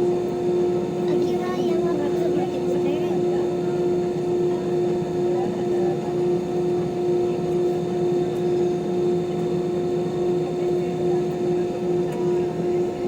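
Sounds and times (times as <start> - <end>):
airliner cabin roar: 0.0 - 13.0
constant hum: 0.0 - 13.0.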